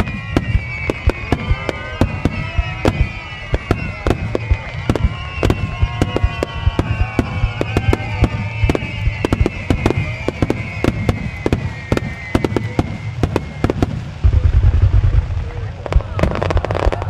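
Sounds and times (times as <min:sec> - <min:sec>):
sustained high falling tone: 0:00.0 - 0:15.6
fireworks bursting: 0:00.0 - 0:17.0
sharp bangs and crackles: 0:00.0 - 0:17.0
low rumble: 0:12.6 - 0:17.0.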